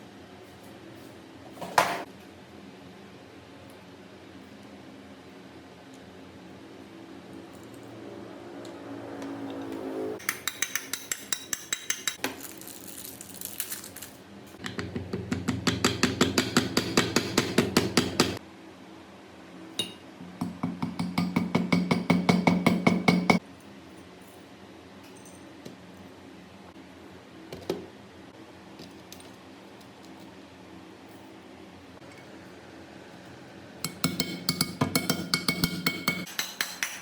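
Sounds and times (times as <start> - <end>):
rapid metallic tapping on metal: 33.9 - 37.0.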